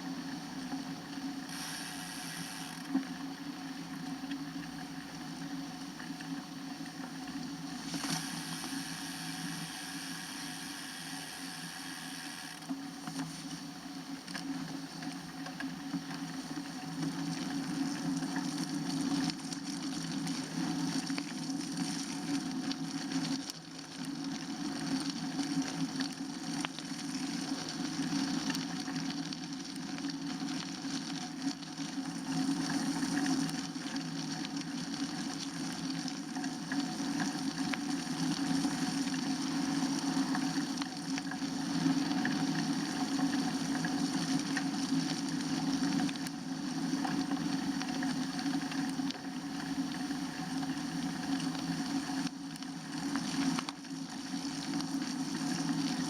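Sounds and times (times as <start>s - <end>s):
bicycle rolling on road: 0.6s - 56.0s
thin high whine: 1.4s - 3.1s, 7.7s - 14.0s.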